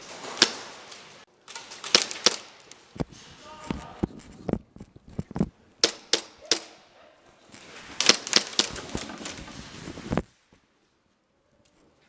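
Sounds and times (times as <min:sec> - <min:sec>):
airsoft guns firing: 0:00.1 - 0:02.7, 0:05.8 - 0:06.9, 0:07.9 - 0:09.4.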